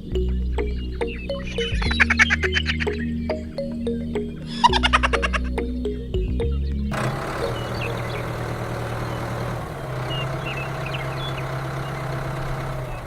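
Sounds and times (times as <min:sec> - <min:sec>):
tractor engine idling: 0:04.6 - 0:13.0.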